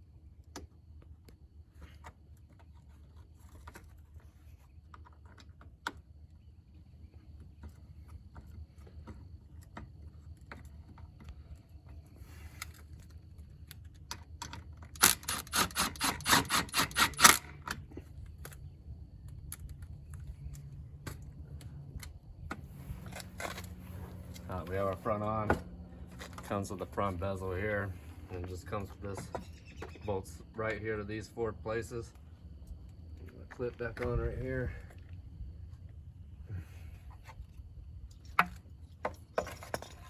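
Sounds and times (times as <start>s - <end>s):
rapid loud ratcheting clicks: 14.4s - 17.8s.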